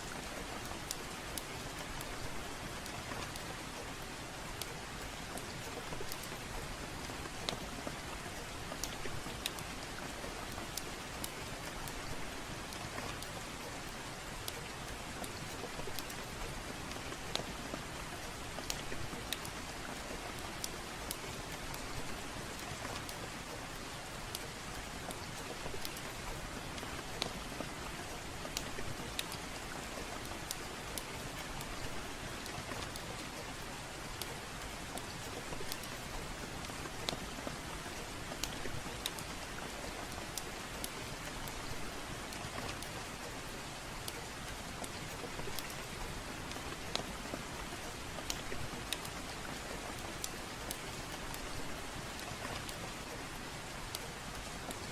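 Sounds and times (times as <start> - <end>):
steady rain falling: 0.0 - 54.9
wood fire crackling: 0.1 - 54.9.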